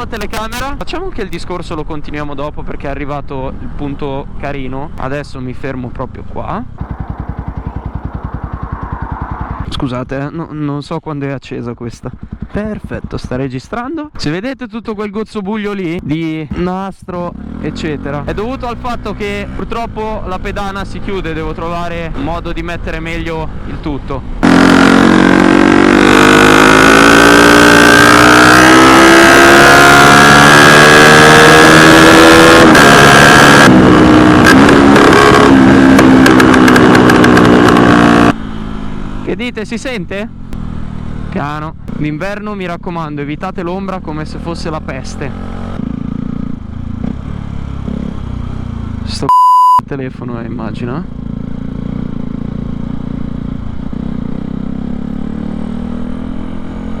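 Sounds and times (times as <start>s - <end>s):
motorcycle engine revving: 6.6s - 10.0s, 12.0s - 13.6s, 16.5s - 39.5s, 40.1s - 49.3s, 50.5s - 57.0s.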